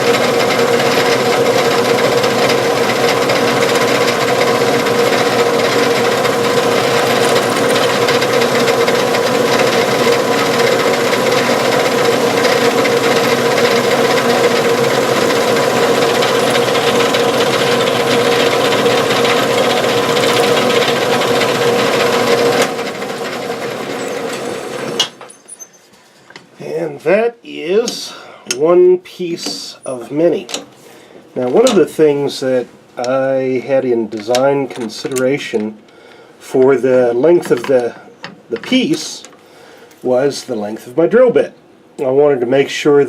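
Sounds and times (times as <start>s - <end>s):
lathe hum: 0.0s - 25.9s
drill scraping grind on metal: 0.0s - 26.0s.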